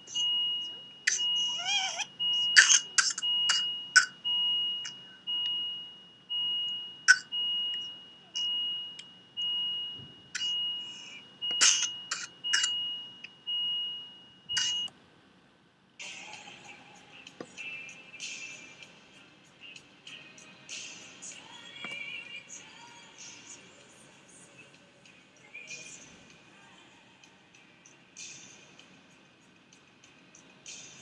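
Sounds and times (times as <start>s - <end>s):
electronic beeping: 0.0s - 14.9s.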